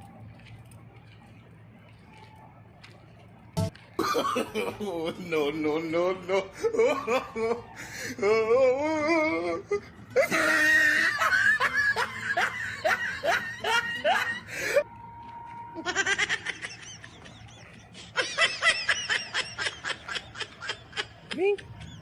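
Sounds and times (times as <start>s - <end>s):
person laughing: 4.0s - 5.6s, 6.2s - 14.8s, 15.8s - 22.0s.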